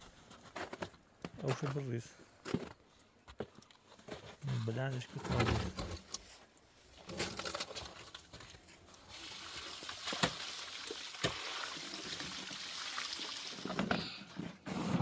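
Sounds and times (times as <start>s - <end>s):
water pouring: 7.2s - 13.9s.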